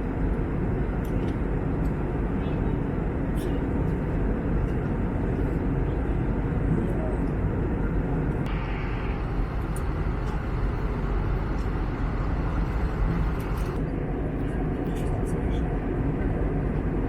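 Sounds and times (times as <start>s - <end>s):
airplane cabin roar: 0.0s - 17.0s.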